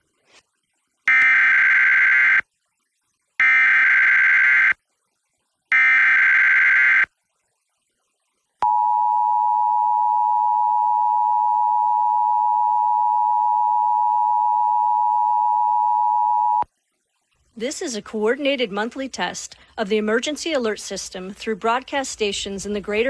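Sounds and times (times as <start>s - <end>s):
two-tone attention signal: 8.6s - 16.6s.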